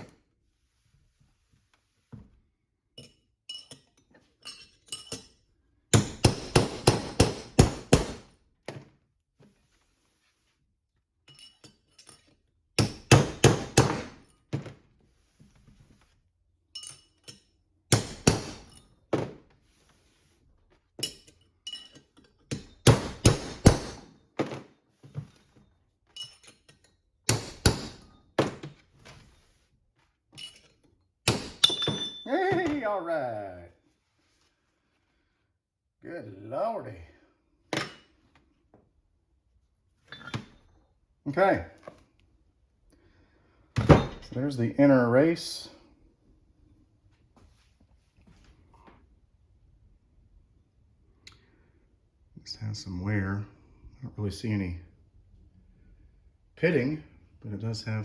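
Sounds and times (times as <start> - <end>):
hammer striking metal punch: 6.0 - 8.2, 22.5 - 24.1, 27.3 - 28.1, 31.3 - 32.8.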